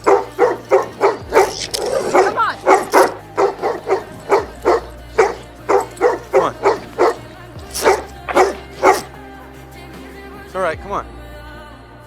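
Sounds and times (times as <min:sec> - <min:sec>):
dog barking: 0:00.0 - 0:09.3
slow music with bass line: 0:00.0 - 0:12.0.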